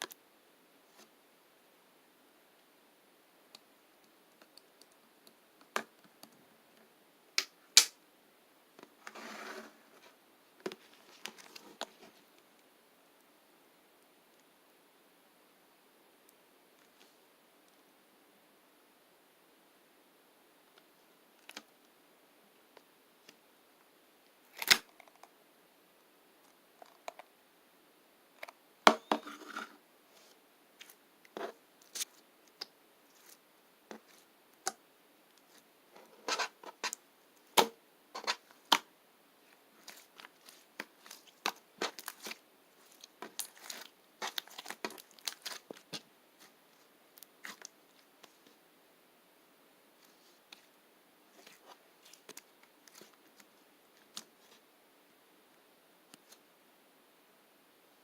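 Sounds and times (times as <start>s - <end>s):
slime squishing with pops: 39.8s - 46.5s.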